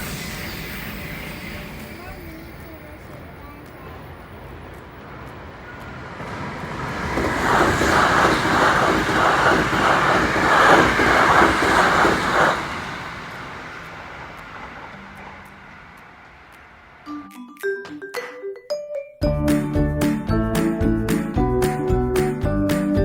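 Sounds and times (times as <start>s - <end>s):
electric train passing: 0.0s - 17.4s.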